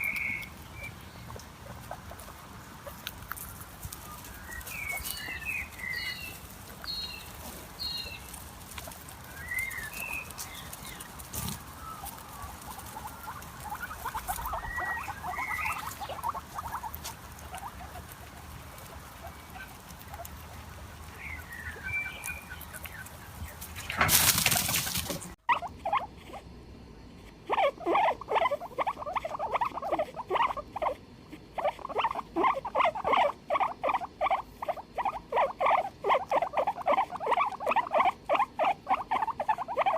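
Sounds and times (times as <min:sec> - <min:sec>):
guinea pig squealing: 0:00.0 - 0:03.4, 0:04.0 - 0:26.5, 0:27.2 - 0:39.9
high chirps: 0:11.8 - 0:17.8.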